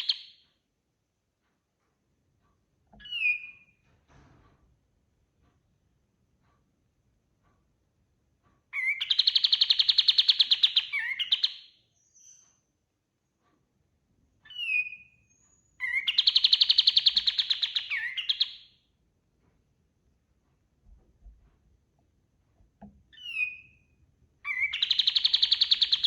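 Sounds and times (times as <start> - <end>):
bird trilling: 8.8 - 12.4, 15.8 - 18.6, 24.4 - 26.0.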